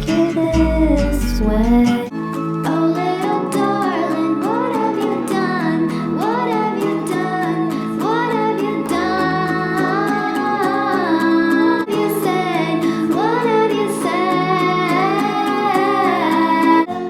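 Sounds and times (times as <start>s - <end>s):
acoustic guitar chords: 0.0s - 17.0s
woman singing slow melody: 0.0s - 17.0s.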